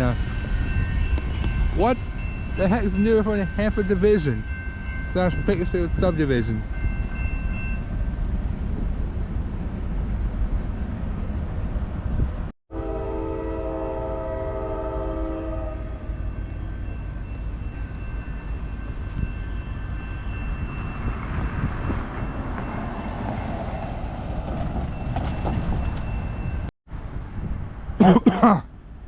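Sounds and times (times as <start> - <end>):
train rumbling past: 0.0 - 28.0
train horn chord: 12.7 - 16.4.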